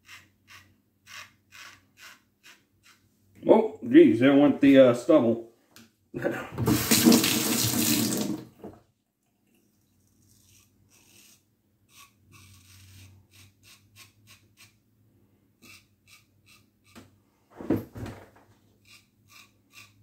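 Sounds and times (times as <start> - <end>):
sink tap running: 6.6 - 8.7.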